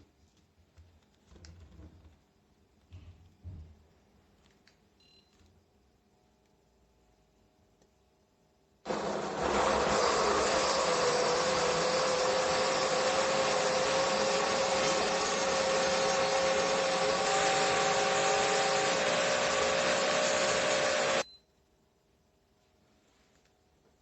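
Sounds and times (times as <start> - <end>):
mini blender whirring: 8.9 - 21.2.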